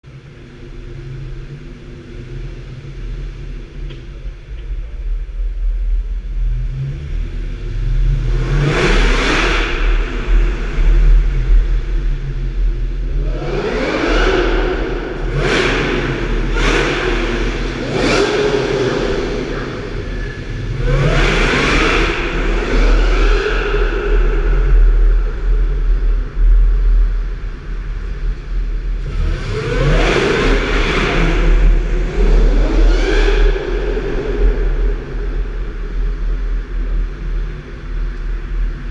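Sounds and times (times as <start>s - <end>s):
car engines idling with low rumble: 0.0s - 38.9s
engine revving hard: 8.1s - 11.2s, 13.1s - 25.4s, 29.0s - 36.2s.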